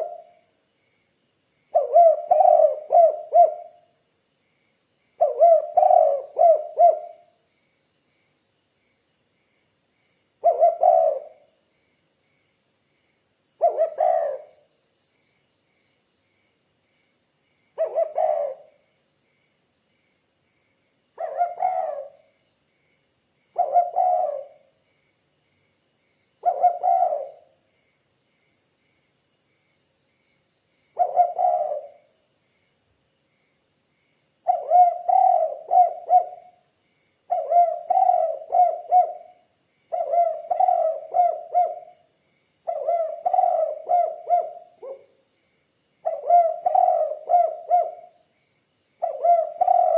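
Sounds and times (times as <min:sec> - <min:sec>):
dove cooing: 0:00.0 - 0:00.3, 0:01.8 - 0:03.9, 0:05.2 - 0:07.3, 0:10.4 - 0:11.5, 0:13.6 - 0:14.6, 0:17.8 - 0:18.8, 0:21.2 - 0:22.3, 0:23.6 - 0:24.7, 0:26.4 - 0:27.5, 0:31.0 - 0:32.1, 0:34.4 - 0:36.6, 0:37.3 - 0:42.0, 0:42.6 - 0:45.1, 0:46.0 - 0:48.2, 0:49.0 - 0:49.9.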